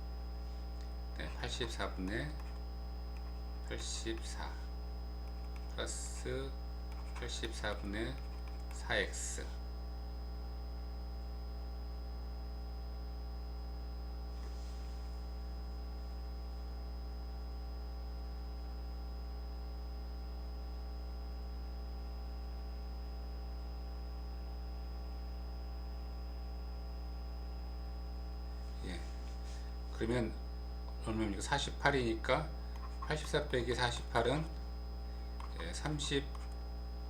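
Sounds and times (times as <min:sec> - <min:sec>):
electrical mains hum: 0:00.0 - 0:37.0
soft rustle: 0:14.3 - 0:15.2.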